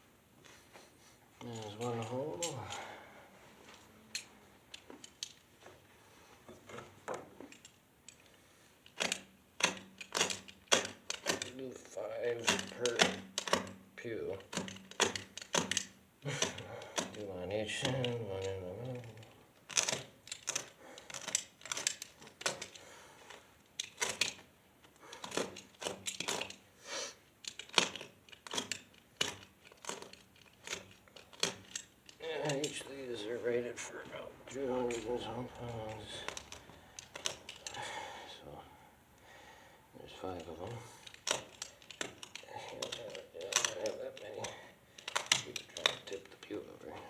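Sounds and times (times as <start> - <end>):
metal hardware clicking: 7.4 - 11.6, 12.2 - 26.6, 27.4 - 33.6, 34.5 - 37.9, 40.1 - 47.0.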